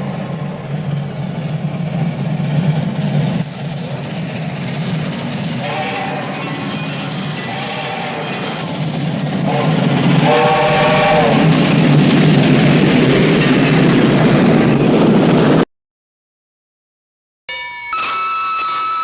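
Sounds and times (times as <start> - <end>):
train running rumble: 0.0 - 15.6
train horn chord blasts: 5.6 - 8.6, 9.5 - 11.4.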